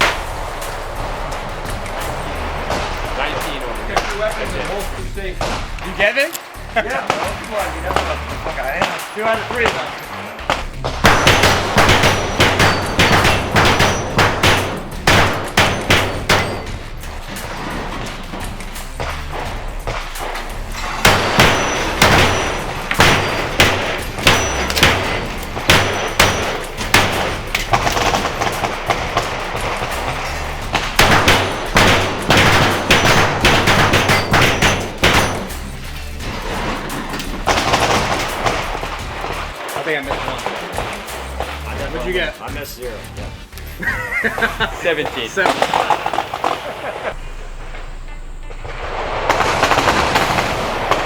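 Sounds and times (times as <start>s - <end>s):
rapid gunshots: 0.0s - 42.3s, 49.2s - 51.0s
background music with bass: 0.0s - 45.5s.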